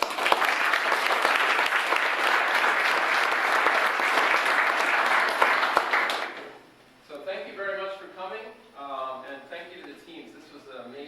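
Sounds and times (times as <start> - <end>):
audience applauding: 0.0 - 6.6.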